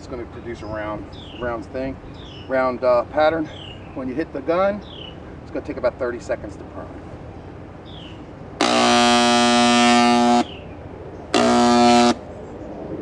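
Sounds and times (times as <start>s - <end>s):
paint spray gun pump buzzing: 8.6s - 10.5s, 11.4s - 12.2s.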